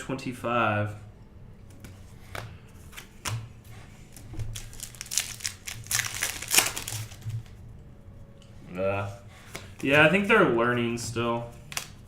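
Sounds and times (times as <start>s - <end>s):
wrapper crinkling with light clicks: 4.5s - 7.3s.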